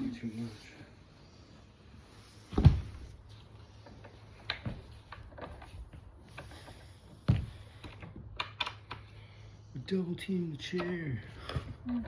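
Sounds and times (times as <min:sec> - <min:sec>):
heavy thump: 0:02.5 - 0:03.2.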